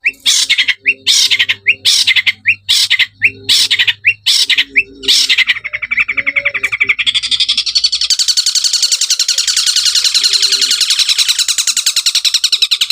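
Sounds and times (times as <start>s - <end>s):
bird chattering trill: 0.0s - 12.9s
bird rasping squawks and chirps: 0.0s - 12.9s.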